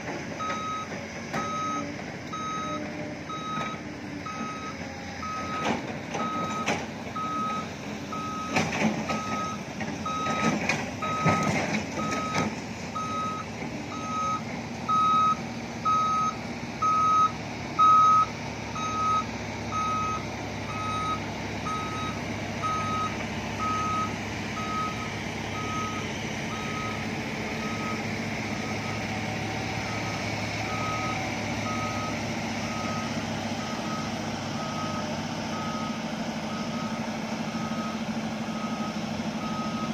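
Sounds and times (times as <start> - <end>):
diesel engine running: 0.0 - 39.9
reversing alarm beeping: 0.4 - 39.9
knocks and clatter: 8.5 - 12.7.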